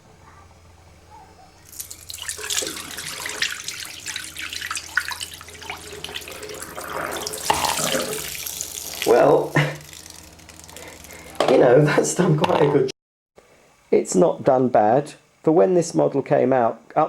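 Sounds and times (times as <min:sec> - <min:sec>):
dirty water pouring into sink: 0:01.7 - 0:11.4.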